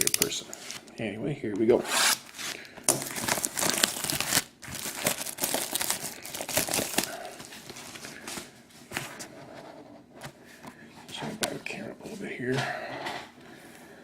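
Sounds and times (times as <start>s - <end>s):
shrink wrap crinkling and tearing: 0.0s - 1.0s, 1.9s - 8.4s.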